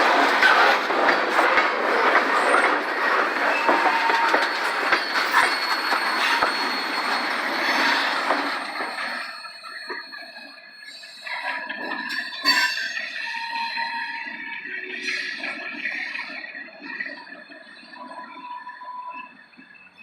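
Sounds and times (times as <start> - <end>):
wheels clicking over rail joints: 0.0 - 10.1
freight train cars rolling: 0.0 - 19.9
thin wheel squeal: 3.5 - 14.3.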